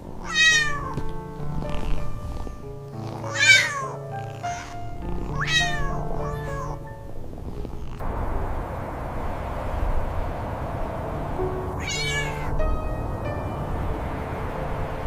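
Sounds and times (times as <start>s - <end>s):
background music with held notes: 0.0s - 8.0s, 9.7s - 15.0s
cat meowing: 0.2s - 7.0s, 11.8s - 12.7s.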